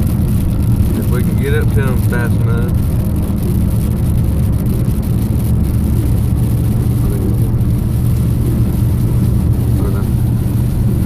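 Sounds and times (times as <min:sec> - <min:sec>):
car engine and road rumble: 0:00.0 - 0:11.0.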